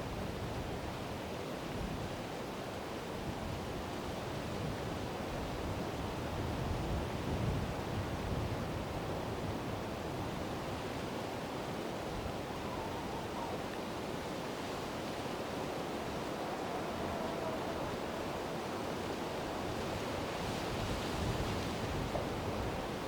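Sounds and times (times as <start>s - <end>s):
heavy wind buffeting microphone: 11.7s - 23.0s.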